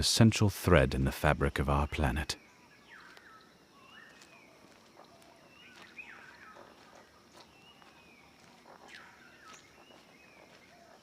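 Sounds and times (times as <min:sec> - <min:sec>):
soft outdoor hiss: 0:00.0 - 0:11.0
faint animal chirps: 0:02.4 - 0:11.0.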